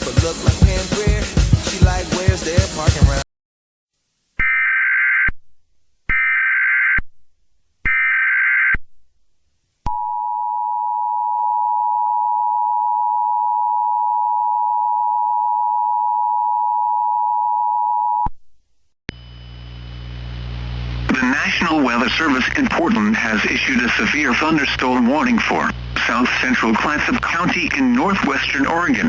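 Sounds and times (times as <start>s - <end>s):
low buzz: 19.1s - 21.4s.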